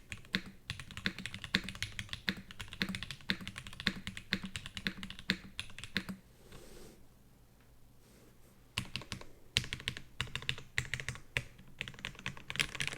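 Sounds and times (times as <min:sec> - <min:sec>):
typing on mechanical keyboard: 0:00.1 - 0:06.2, 0:08.8 - 0:12.9.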